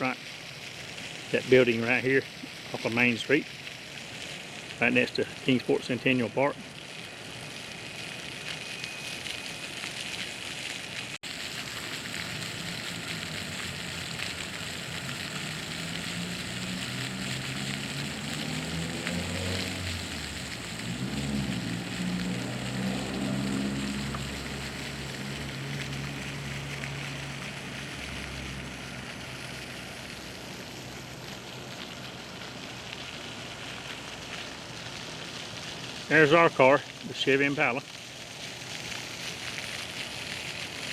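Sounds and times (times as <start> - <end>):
water fountain splashing: 0.0 - 40.9
engine passing: 11.4 - 34.3.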